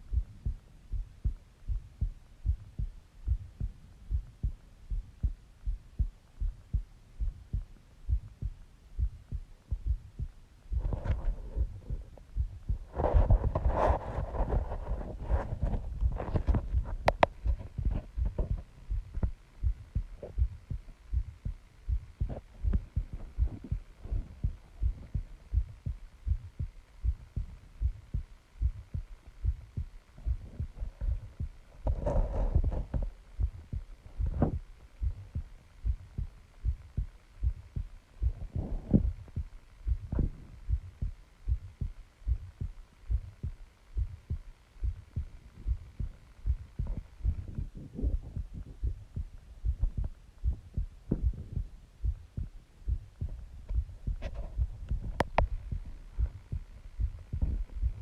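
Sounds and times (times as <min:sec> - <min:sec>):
heartbeat thumps: 0:00.0 - 0:58.0.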